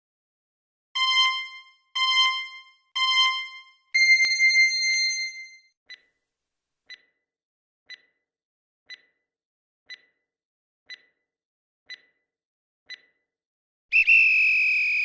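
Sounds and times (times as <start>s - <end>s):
timer ticks: 1.0s - 6.1s, 6.9s - 7.3s, 7.9s - 8.3s, 8.9s - 9.3s, 9.9s - 10.3s, 10.9s - 11.3s, 11.9s - 12.3s, 12.9s - 13.3s.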